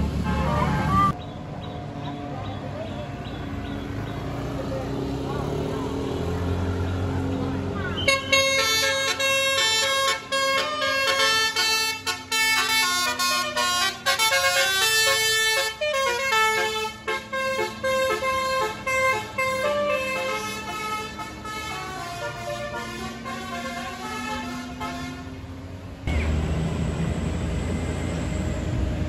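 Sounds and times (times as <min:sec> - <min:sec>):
multi-tone musical air horn: 0:00.2 - 0:01.2, 0:08.0 - 0:25.4.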